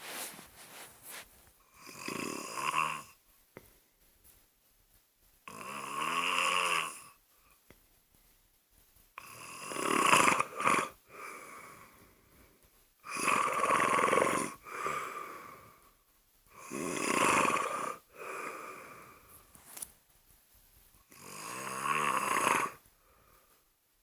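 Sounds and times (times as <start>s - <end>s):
soft breath: 0.0s - 1.8s, 3.2s - 5.4s, 11.0s - 12.9s, 14.5s - 16.6s, 17.7s - 21.1s, 22.7s - 23.8s
person snoring: 1.7s - 3.2s, 5.5s - 7.2s, 9.2s - 12.0s, 13.0s - 15.8s, 16.5s - 19.3s, 21.1s - 22.9s.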